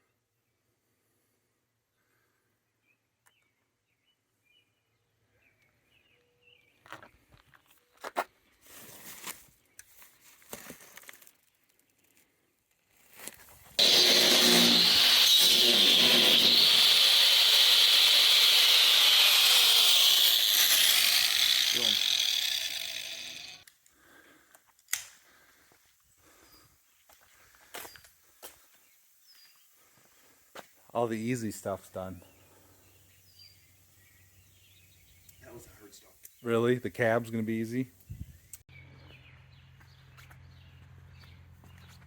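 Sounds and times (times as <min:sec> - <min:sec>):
power tool whining: 0:13.8 - 0:23.7.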